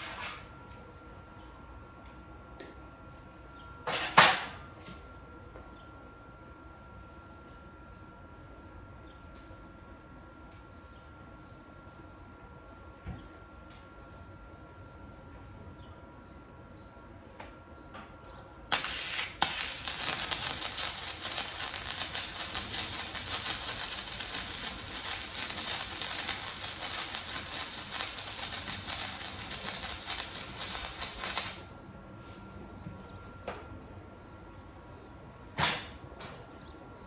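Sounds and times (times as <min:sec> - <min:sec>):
welding arc crackling: 0:18.7 - 0:31.6.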